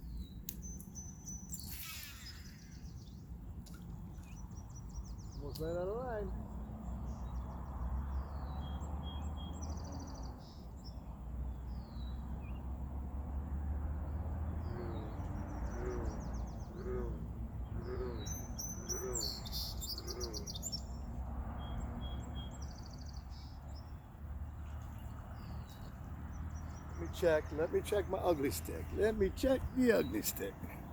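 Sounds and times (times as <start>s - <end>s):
birds chirping and trilling: 0.0s - 11.0s, 14.5s - 24.1s, 25.2s - 30.9s
lower bird call: 1.1s - 3.3s, 14.5s - 21.0s.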